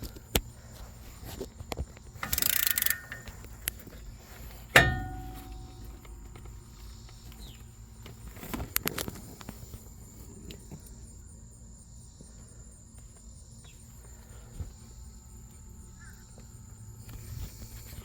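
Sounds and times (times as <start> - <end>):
hand tool metallic clicks: 2.2 - 3.8, 4.7 - 6.5.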